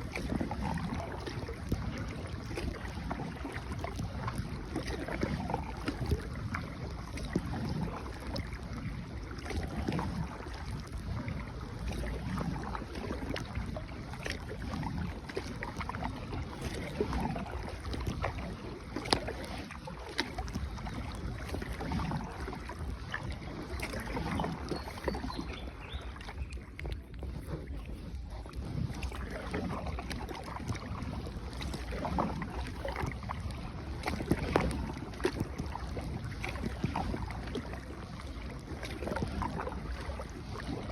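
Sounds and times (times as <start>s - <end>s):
paddle strokes in water: 0.0s - 40.9s
water wash: 0.0s - 40.9s.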